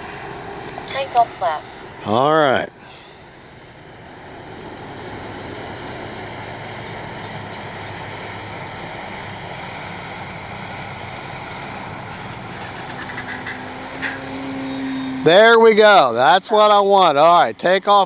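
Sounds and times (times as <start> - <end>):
thin rising whine: 9.6 - 16.8
electric motor hum: 10.5 - 15.6.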